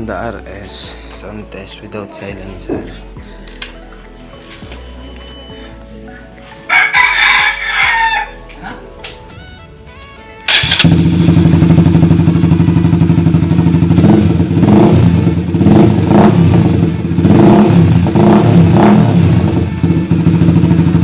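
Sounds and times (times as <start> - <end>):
motorcycle engine idling: 10.5 - 21.0.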